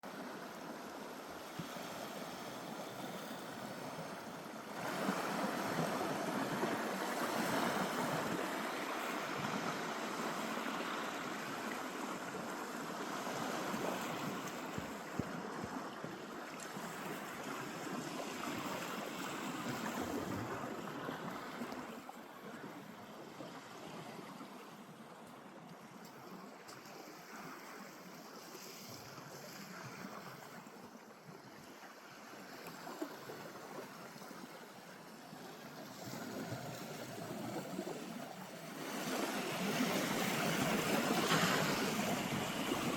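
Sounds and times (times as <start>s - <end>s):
surf washing onto beach: 38.8s - 42.9s.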